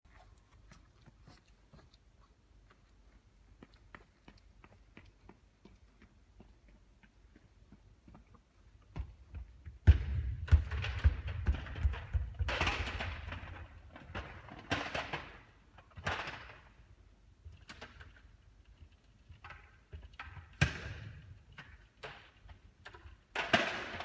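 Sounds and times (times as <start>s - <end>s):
basketball bouncing on a court: 8.9s - 13.6s.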